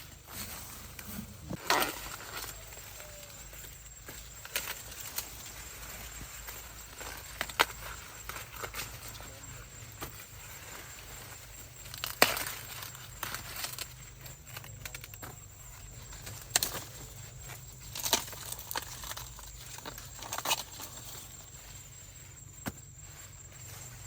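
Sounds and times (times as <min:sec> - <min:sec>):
dry leaves rustling: 0:00.0 - 0:24.0
corn ears snapping: 0:00.2 - 0:09.4, 0:11.8 - 0:15.4, 0:16.1 - 0:21.2.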